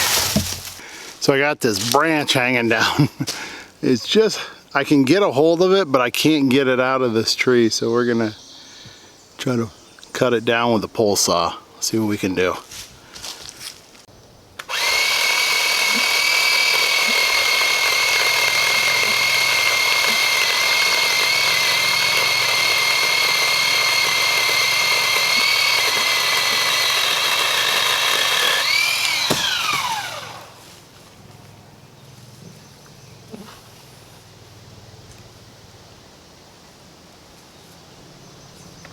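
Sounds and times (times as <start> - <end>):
motor winding down: 14.6 - 30.6
pole saw high whine: 14.6 - 30.7.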